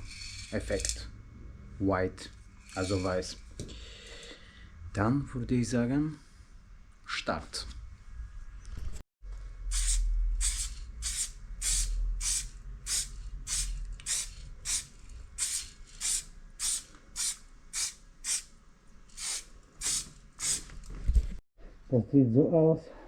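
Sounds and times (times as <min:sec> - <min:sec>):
spray paint can hissing: 0:09.7 - 0:18.5, 0:19.1 - 0:20.7.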